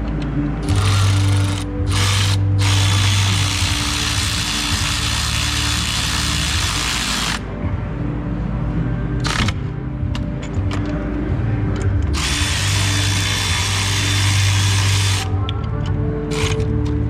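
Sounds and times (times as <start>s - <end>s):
power drill running: 0.7s - 7.4s, 12.2s - 15.3s.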